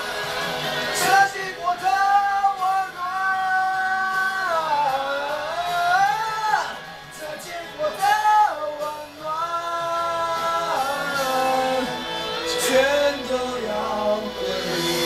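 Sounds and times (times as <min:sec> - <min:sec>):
backing music: 0:00.0 - 0:15.0
person singing a pop ballad: 0:00.0 - 0:15.0.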